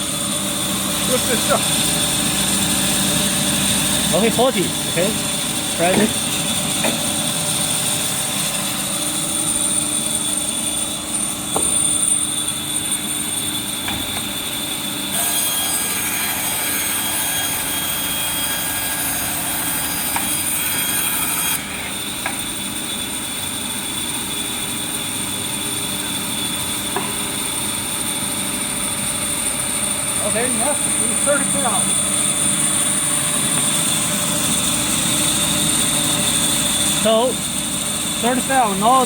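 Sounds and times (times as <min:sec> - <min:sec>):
band saw whining: 0:00.0 - 0:39.0
saw blade cutting wood: 0:00.7 - 0:08.8, 0:09.4 - 0:22.6, 0:30.2 - 0:37.6.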